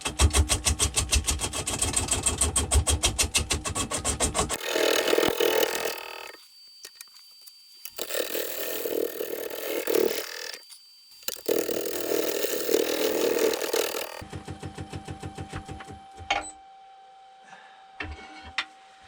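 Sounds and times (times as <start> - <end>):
lathe tool cutting wood: 4.5 - 6.4, 7.9 - 14.2
lathe running: 4.5 - 7.0, 7.8 - 14.2.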